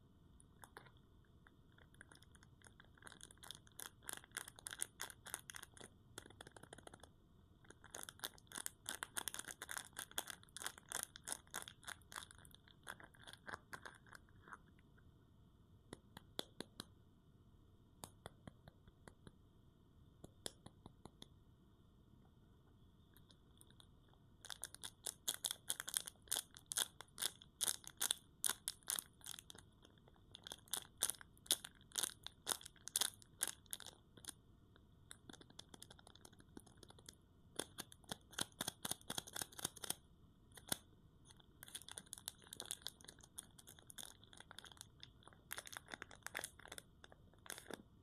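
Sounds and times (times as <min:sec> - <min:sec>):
soap wrapper crackling: 0:07.8 - 0:14.5, 0:41.6 - 0:47.8.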